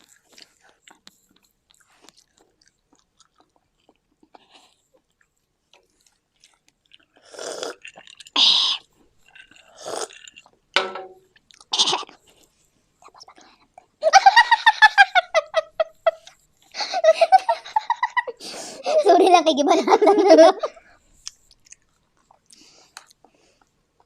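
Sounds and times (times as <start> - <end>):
people chewing: 0.0 - 10.7, 11.3 - 14.0, 14.9 - 18.8, 20.6 - 24.0.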